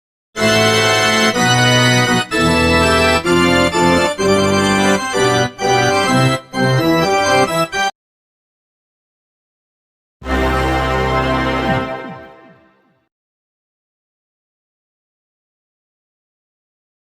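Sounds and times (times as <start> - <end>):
organ-like keyboard chords: 0.4 - 7.9, 10.2 - 13.0.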